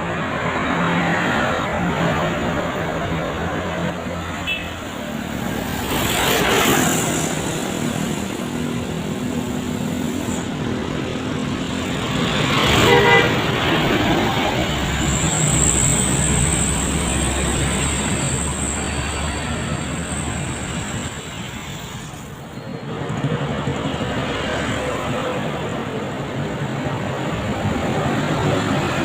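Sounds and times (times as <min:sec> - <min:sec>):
road traffic passing: 0:00.0 - 0:29.0
vehicle horn toot: 0:04.4 - 0:04.8, 0:12.8 - 0:13.4.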